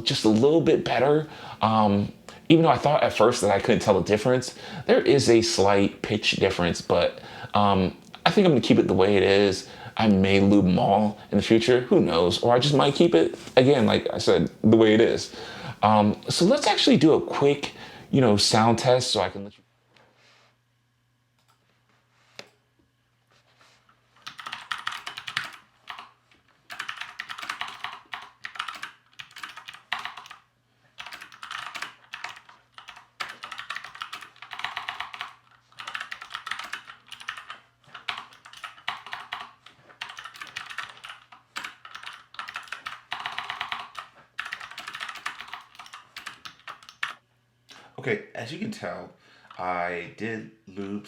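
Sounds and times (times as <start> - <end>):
mechanical keyboard typing: 24.2 - 26.1, 26.7 - 30.4, 31.0 - 47.2.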